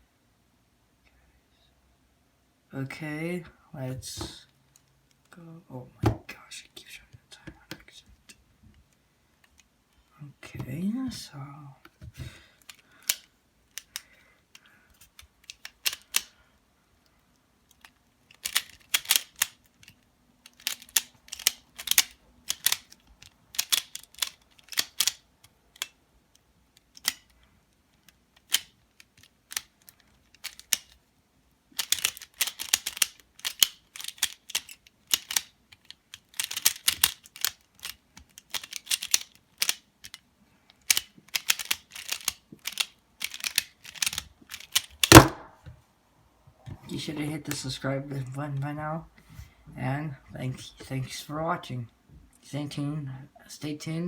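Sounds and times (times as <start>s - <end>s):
plastic puzzle clicking: 12.6s - 16.3s, 17.6s - 31.0s, 31.8s - 45.5s.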